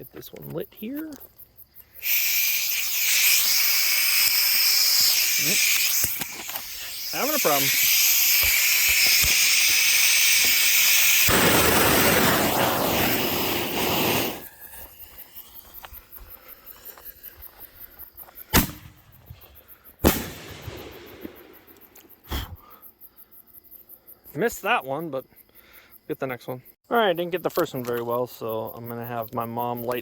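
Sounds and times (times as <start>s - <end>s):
firework fuse hissing: 1.9s - 16.2s, 20.0s - 22.0s
firework bangs: 2.0s - 14.5s, 18.5s - 19.0s, 20.0s - 21.8s.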